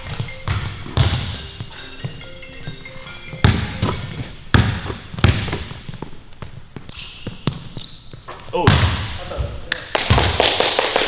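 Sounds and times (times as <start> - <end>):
basketball bouncing on court: 0.0 - 2.2, 3.3 - 10.8
phone ringtone marimba melody: 0.0 - 4.2
high squeaks: 5.2 - 8.6.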